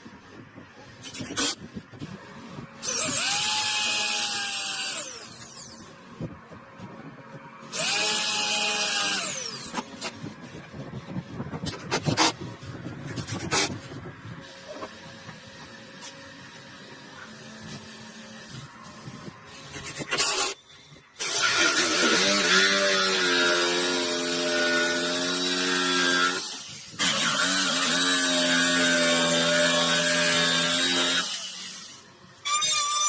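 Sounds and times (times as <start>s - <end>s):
power tool cutting wood: 2.8s - 5.8s, 7.7s - 10.2s, 21.2s - 33.0s.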